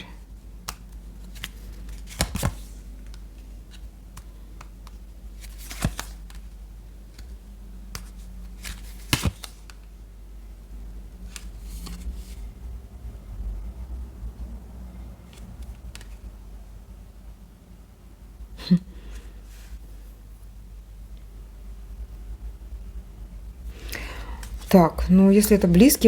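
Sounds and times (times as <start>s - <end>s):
cards being shuffled: 0.6s - 9.9s, 11.3s - 12.4s, 15.3s - 16.3s, 23.8s - 24.8s.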